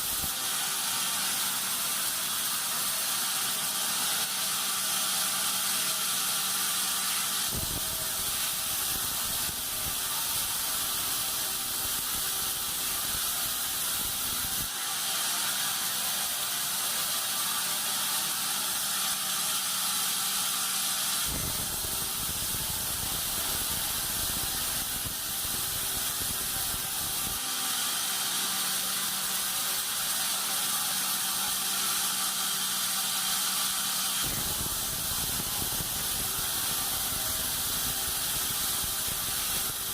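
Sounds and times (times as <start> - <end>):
band sawmill hissing: 33.9 - 39.9.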